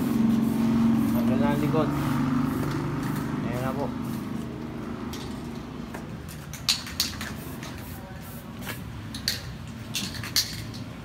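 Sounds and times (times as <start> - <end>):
metallic clicks of bicycle spokes: 5.1 - 7.8, 9.1 - 11.0.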